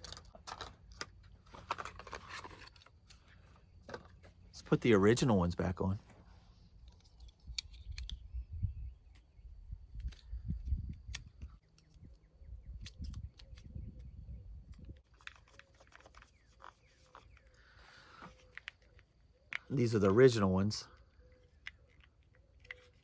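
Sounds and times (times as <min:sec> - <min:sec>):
small plastic clicks and snaps: 0:06.8 - 0:08.3, 0:09.9 - 0:12.1.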